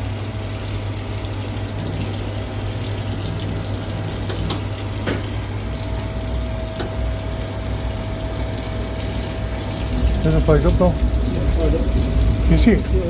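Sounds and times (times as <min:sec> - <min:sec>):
water running from a tap: 0:00.0 - 0:13.0
low hum: 0:09.4 - 0:13.0.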